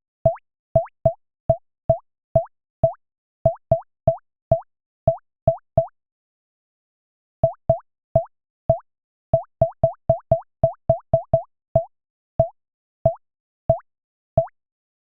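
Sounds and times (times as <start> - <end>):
synthesized water-drop plops: 0.3 - 4.2, 9.4 - 12.5, 13.1 - 13.8.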